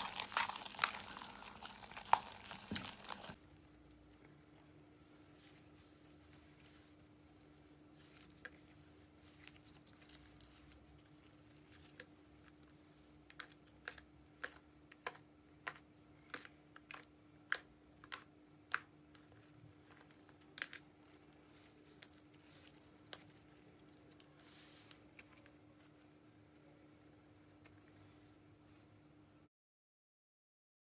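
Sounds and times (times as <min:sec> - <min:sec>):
faint steady hum: 0:00.0 - 0:29.5.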